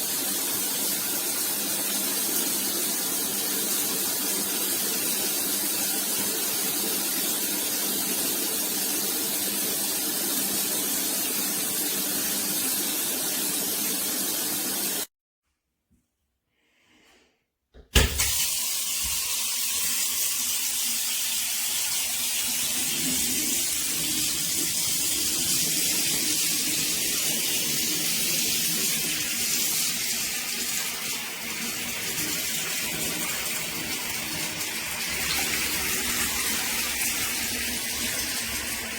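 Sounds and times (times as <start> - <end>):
shower water spraying: 0.0 - 15.1, 18.0 - 38.9
sharp knock: 17.8 - 18.3.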